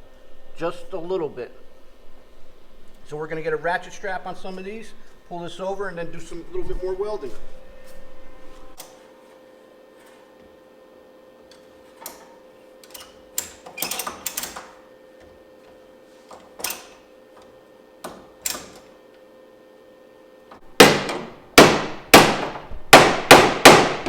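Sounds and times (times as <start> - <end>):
hammer blows on sheet metal: 20.8 - 24.0.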